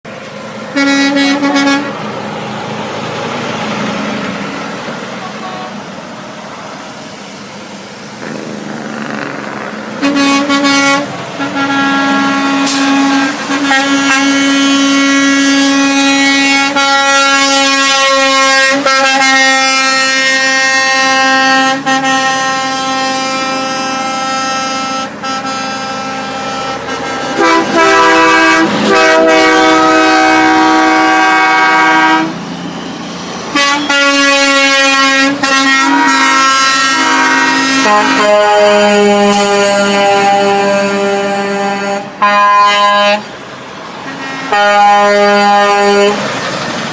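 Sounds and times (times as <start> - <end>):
street traffic: 0.0 - 46.9
truck air horns blasting: 0.2 - 2.2, 5.2 - 6.1, 8.0 - 43.4, 44.0 - 46.3
multi-note train horn: 0.6 - 2.1, 5.2 - 5.9, 10.0 - 32.4, 33.5 - 43.3, 44.1 - 46.3.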